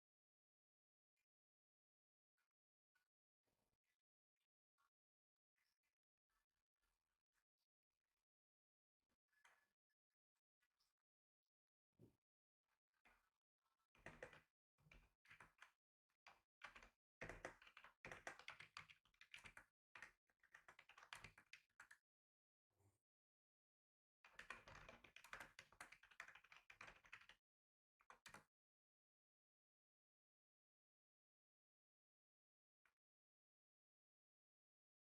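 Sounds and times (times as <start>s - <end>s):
typing on computer keyboard: 16.6s - 22.0s, 24.3s - 27.4s.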